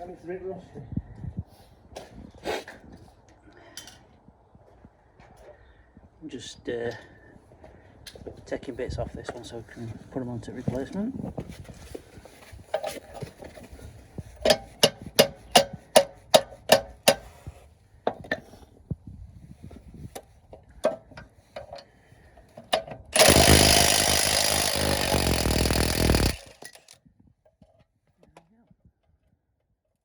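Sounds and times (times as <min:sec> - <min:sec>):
power tool running: 0:23.2 - 0:27.0.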